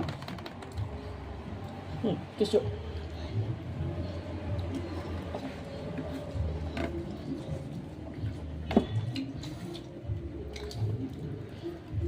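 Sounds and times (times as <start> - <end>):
wet chewing of food: 4.4 - 12.0.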